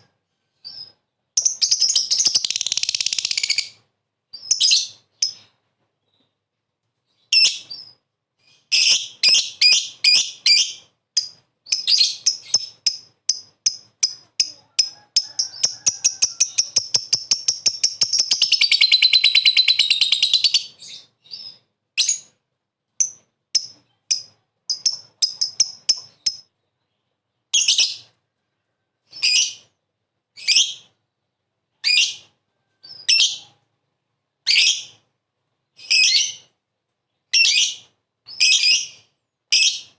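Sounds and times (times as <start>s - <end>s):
lovebird shrill calls and trill: 0.7s - 5.4s, 7.3s - 22.3s, 23.0s - 26.5s, 35.8s - 36.5s, 37.3s - 39.9s.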